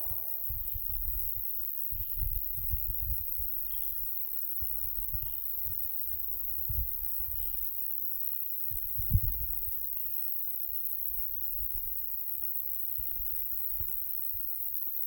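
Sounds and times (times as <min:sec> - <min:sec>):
wind buffeting microphone: 0:00.0 - 0:03.6
high insect hiss: 0:00.0 - 0:15.0.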